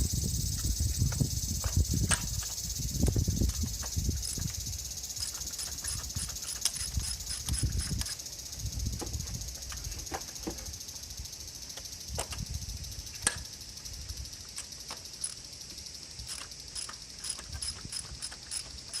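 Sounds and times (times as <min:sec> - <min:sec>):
steady high-pitched hiss: 0:00.0 - 0:19.0
ratchet ticking: 0:01.6 - 0:08.3, 0:16.2 - 0:19.0
hand tools clicking and tapping: 0:05.2 - 0:08.2, 0:16.2 - 0:19.0.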